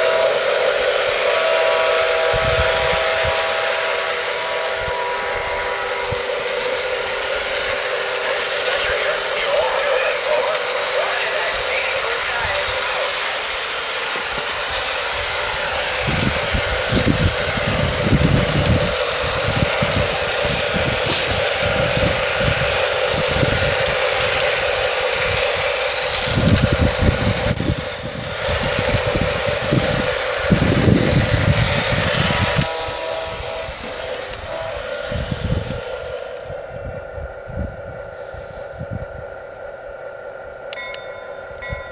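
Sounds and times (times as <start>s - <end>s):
model locomotive whirring hum: 0.0s - 41.9s
wind buffeting microphone: 0.9s - 7.9s, 14.2s - 39.4s.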